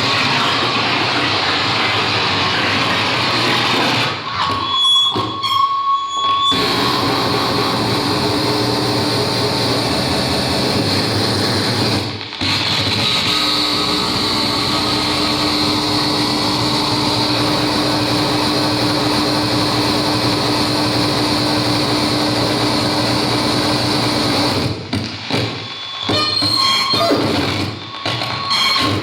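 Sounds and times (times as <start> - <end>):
harsh electronic noise music: 6.4 - 29.0.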